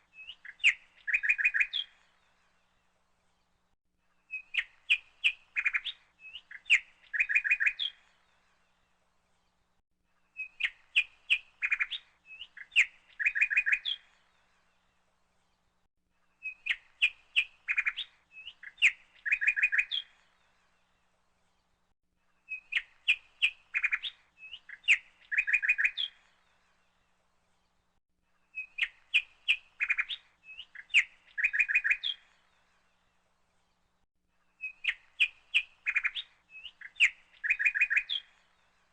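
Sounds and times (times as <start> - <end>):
bird chirps: 0.0 - 2.6, 4.2 - 8.8, 10.2 - 15.6, 16.3 - 21.7, 22.3 - 27.8, 28.4 - 38.9.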